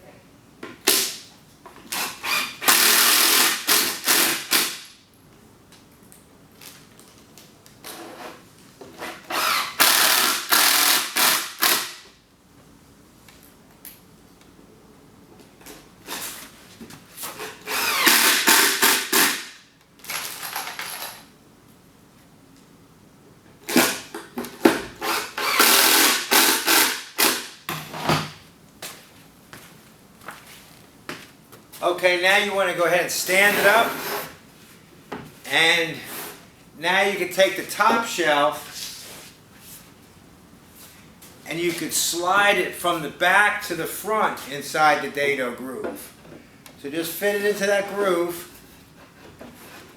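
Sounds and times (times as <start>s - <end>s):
power drill driving screws into wood: 1.9s - 4.9s, 9.2s - 12.0s, 17.4s - 20.4s, 24.9s - 27.6s.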